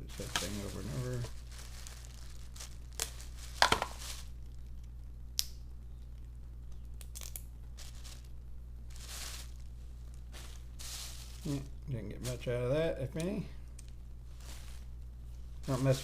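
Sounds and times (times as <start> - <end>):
rustling crunch: 0.0 - 4.7, 7.7 - 12.6, 13.8 - 16.0
steady low hum: 0.0 - 16.0
crab shells cracking: 2.7 - 7.8.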